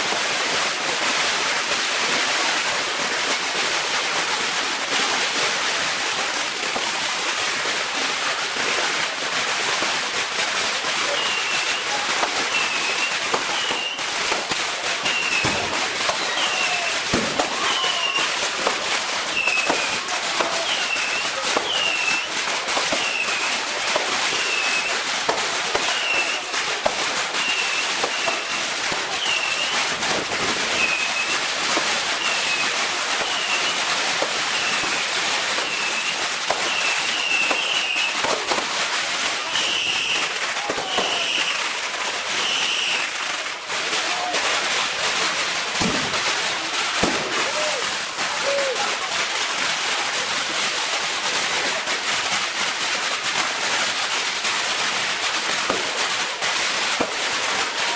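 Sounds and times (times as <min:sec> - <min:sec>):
fireworks cracking and banging: 0:00.0 - 0:57.9
crackling hiss: 0:04.2 - 0:50.3.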